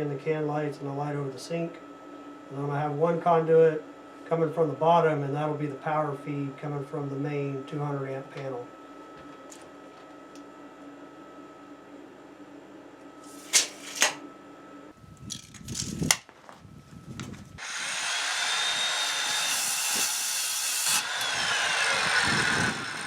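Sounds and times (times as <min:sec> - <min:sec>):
power tool whining: 0:17.6 - 0:23.0.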